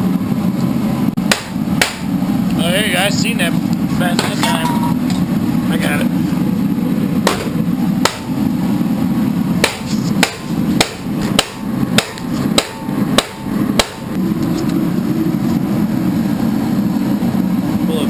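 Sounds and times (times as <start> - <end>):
low engine hum: 0.0 - 18.0
hammer striking metal: 1.3 - 2.1, 4.1 - 5.2, 7.2 - 8.3, 9.6 - 14.2.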